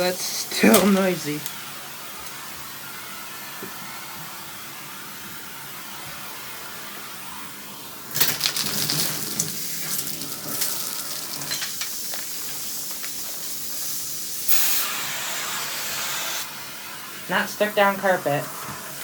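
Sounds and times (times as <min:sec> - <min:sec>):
vacuum running: 0:00.0 - 0:19.0
debris crackling through vacuum hose: 0:07.7 - 0:14.9.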